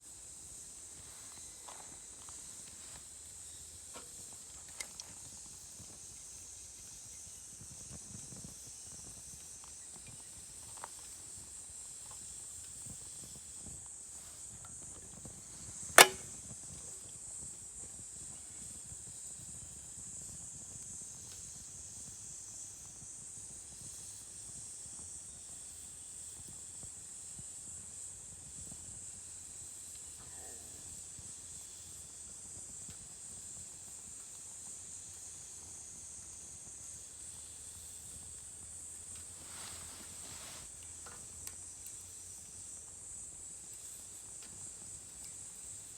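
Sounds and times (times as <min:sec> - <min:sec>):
loud sharp pop from fire: 0:16.0 - 0:16.4.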